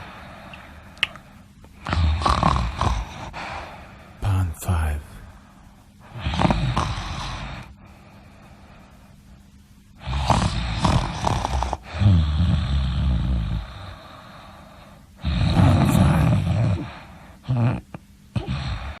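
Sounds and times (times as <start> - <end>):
person snoring: 1.8 - 3.7, 6.1 - 7.7, 10.0 - 19.0
snort: 1.8 - 3.7, 6.0 - 7.7, 10.0 - 14.4, 15.2 - 19.0.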